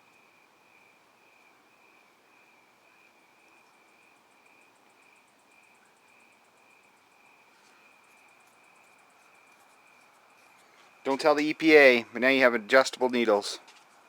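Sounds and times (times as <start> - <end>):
insect trilling: 0.1 - 10.8
rapid high insect pulsing: 3.0 - 11.0.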